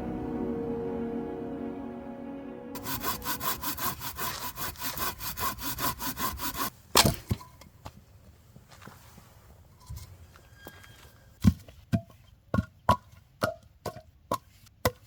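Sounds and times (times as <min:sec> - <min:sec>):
music: 0:00.0 - 0:03.5
hand saw cutting wood: 0:02.8 - 0:06.7
sharp wood crack: 0:06.9 - 0:07.4.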